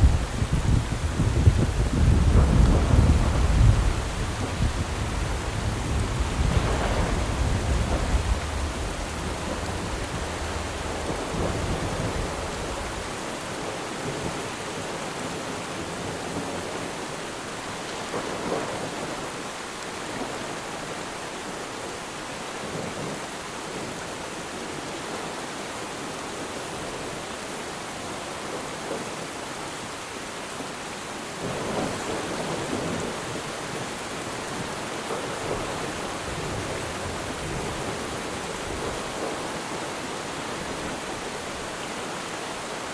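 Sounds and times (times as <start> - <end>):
distant thunder rumble: 0.0 - 13.4
rain falling on water: 0.0 - 42.9.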